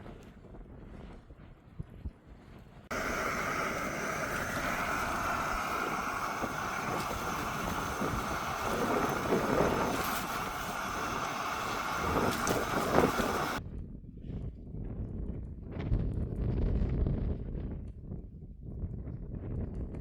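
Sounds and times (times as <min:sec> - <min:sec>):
blizzard wind against microphone: 0:00.0 - 0:17.8.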